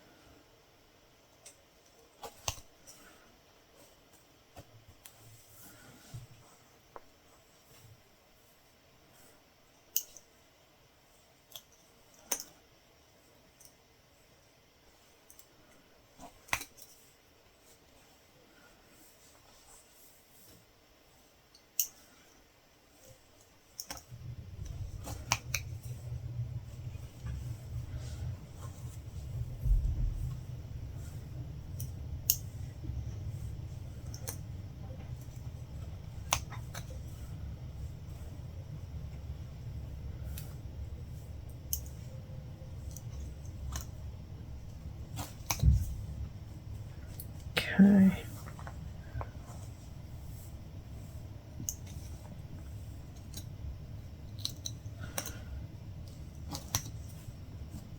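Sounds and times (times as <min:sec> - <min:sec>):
low steady hum: 0:00.0 - 0:57.9
low rumble: 0:24.1 - 0:57.9.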